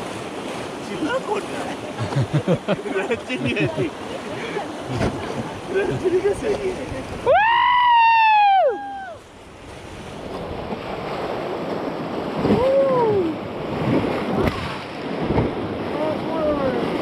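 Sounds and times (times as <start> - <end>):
river water rushing: 0.0 - 17.0
wind on microphone: 8.8 - 17.0.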